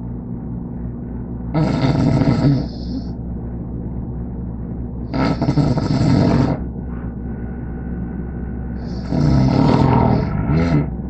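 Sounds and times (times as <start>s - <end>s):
person snoring: 1.6s - 3.1s, 5.1s - 6.7s, 8.8s - 11.0s.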